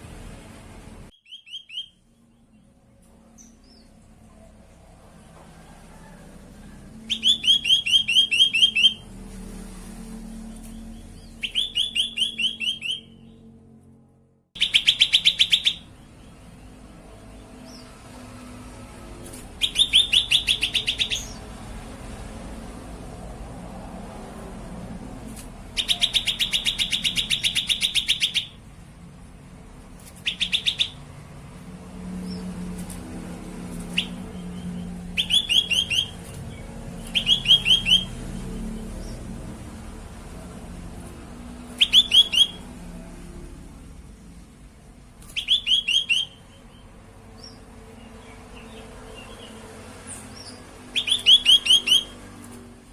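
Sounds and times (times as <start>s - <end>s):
bird calling bright notes: 50.9s - 52.2s.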